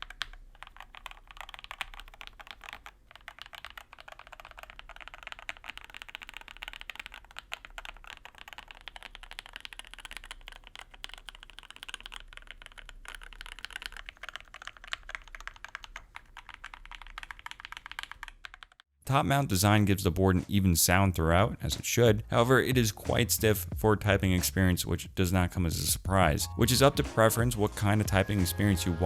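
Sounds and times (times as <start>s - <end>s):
typing on mechanical keyboard: 0.0s - 18.9s.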